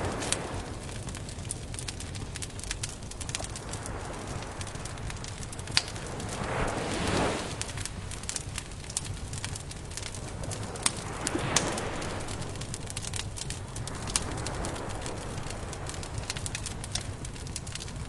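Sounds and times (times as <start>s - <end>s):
campfire crackling and popping: 0.0s - 18.0s
low swells of sound: 3.1s - 16.5s.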